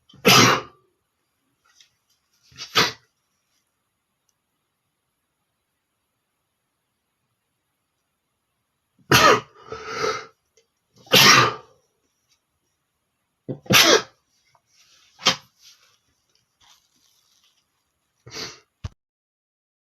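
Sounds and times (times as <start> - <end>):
man sneezing: 0.2 - 0.8, 9.1 - 10.2, 11.0 - 11.7, 13.6 - 14.1.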